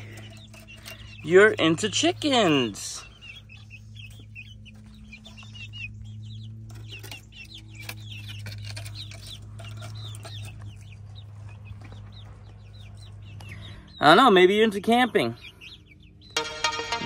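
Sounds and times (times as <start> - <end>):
chickens peeping and clucking: 0.0 - 17.0
constant low hum: 0.0 - 17.0.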